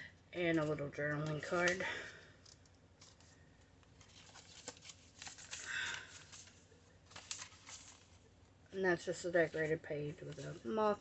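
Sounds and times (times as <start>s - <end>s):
paper pages rustling: 2.4s - 11.0s.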